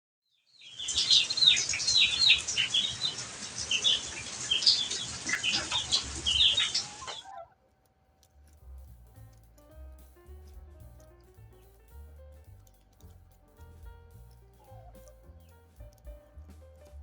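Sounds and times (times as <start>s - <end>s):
chickens clucking: 0.8s - 7.8s, 14.6s - 15.3s
steady hiss: 8.4s - 16.3s.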